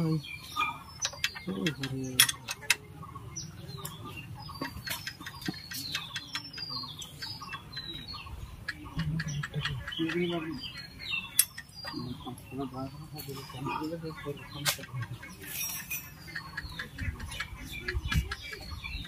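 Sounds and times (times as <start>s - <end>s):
small birds chirping: 0.0s - 19.0s
sharp clicks and taps: 1.0s - 2.9s, 4.6s - 7.9s.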